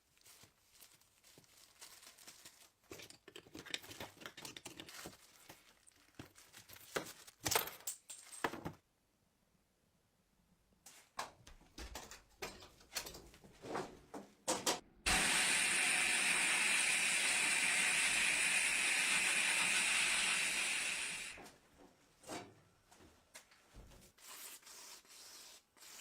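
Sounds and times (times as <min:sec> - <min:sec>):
loud spray hiss: 0:15.1 - 0:21.4.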